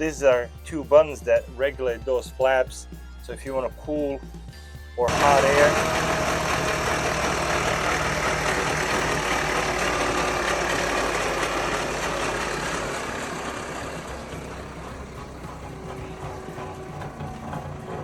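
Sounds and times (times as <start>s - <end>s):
vehicle engine running: 5.1s - 18.0s.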